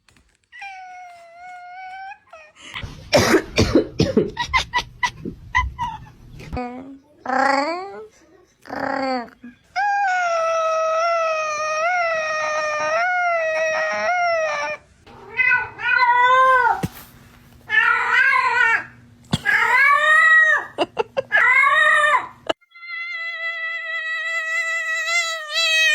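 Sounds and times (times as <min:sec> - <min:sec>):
cats meowing and yowling: 0:09.8 - 0:16.8, 0:17.7 - 0:25.9.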